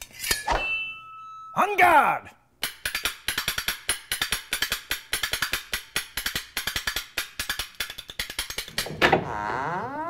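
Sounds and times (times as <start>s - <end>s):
metal spoons clashing: 0.0s - 1.6s.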